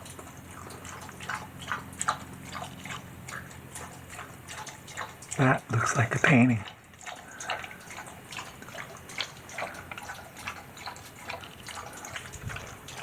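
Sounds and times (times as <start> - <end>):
faint water trickle: 0.0 - 13.0
water dripping in a cave: 0.0 - 13.0.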